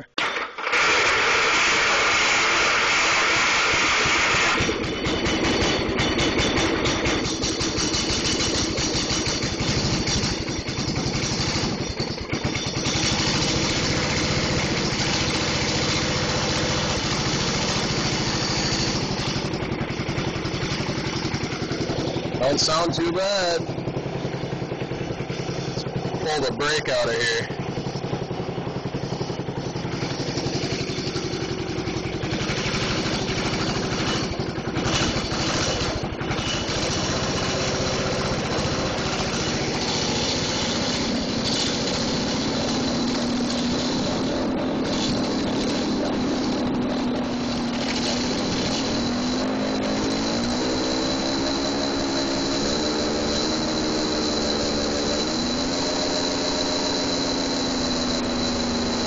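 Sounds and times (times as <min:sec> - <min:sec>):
gasoline engine running: 0:00.0 - 0:59.0
mechanical siren wail: 0:42.2 - 0:59.0.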